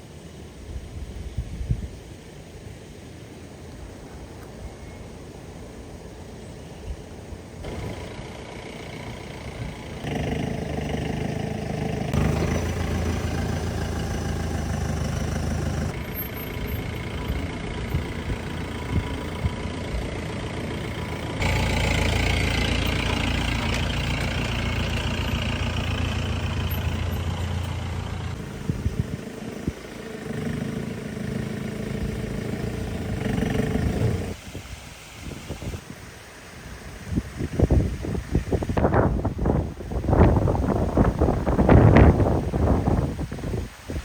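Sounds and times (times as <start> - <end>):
diesel engine running: 7.6 - 34.4.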